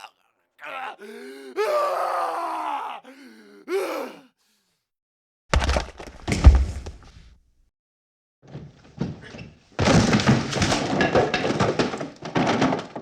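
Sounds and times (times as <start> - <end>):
grunt: 0.0 - 4.4
pained groan: 0.0 - 4.5.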